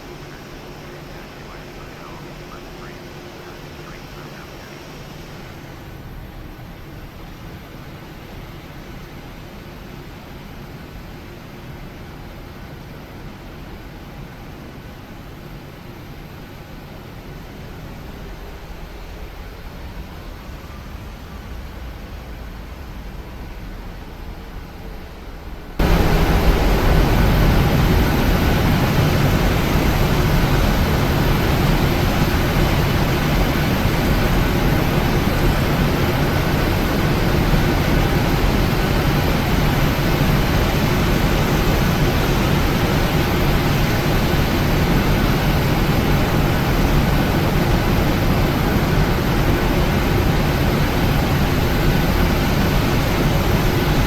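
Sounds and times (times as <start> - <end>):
faint steady tones: 0.0 - 6.0, 25.8 - 54.0
jet engine and airflow roar in cabin: 0.0 - 54.0.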